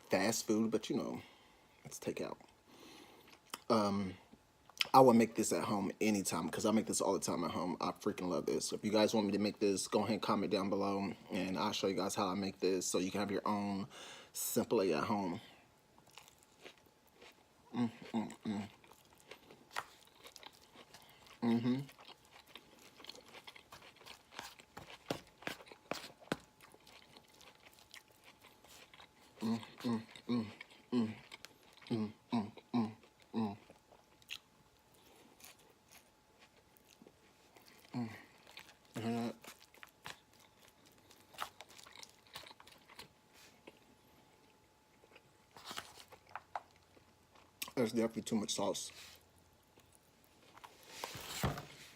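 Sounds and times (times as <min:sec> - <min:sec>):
person chewing food: 0:01.7 - 0:03.7, 0:16.0 - 0:47.8.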